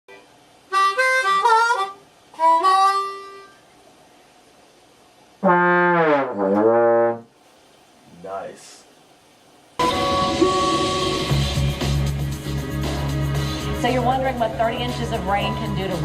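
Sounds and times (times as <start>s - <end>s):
brass-like music: 5.4s - 7.3s, 9.8s - 16.0s.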